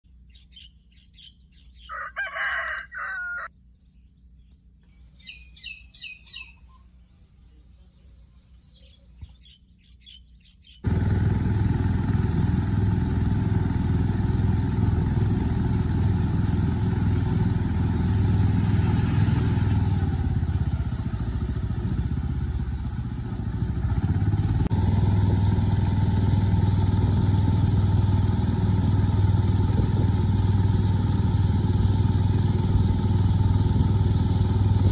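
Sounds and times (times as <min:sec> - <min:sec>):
small birds chirping: 0:00.1 - 0:02.0, 0:03.7 - 0:10.8
rooster crowing: 0:01.8 - 0:03.5
loud engine-like noise: 0:10.8 - 0:34.9.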